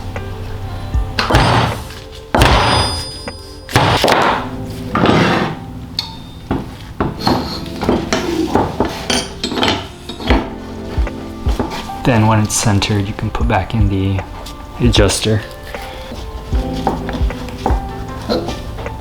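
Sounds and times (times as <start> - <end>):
background music: 0.0 - 19.0
metal parts clunking and scraping: 1.2 - 11.9.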